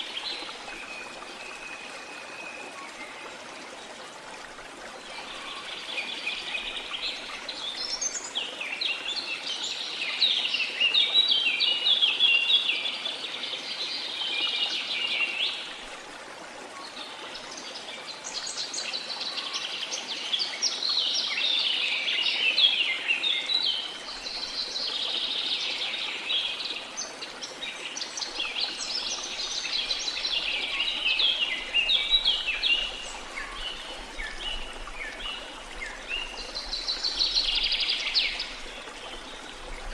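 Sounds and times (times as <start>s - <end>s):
songbirds singing and chirping: 17.2s - 39.9s.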